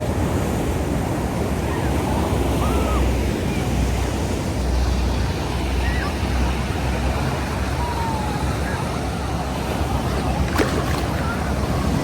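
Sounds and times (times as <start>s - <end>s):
ocean surf washing: 0.0s - 12.0s.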